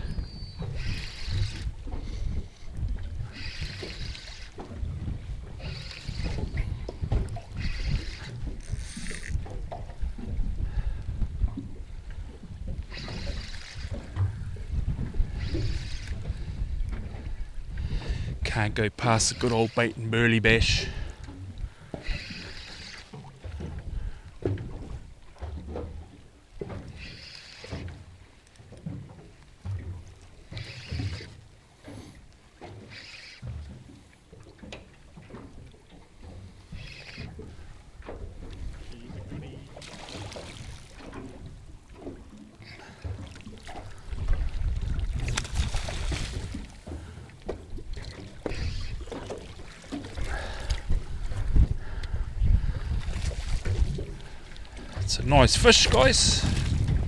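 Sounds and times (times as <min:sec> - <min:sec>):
wind rumbling on microphone: 0:00.0 - 0:18.8, 0:43.1 - 0:49.4, 0:50.1 - 0:57.0
water sloshing against boat hull: 0:00.0 - 0:57.0.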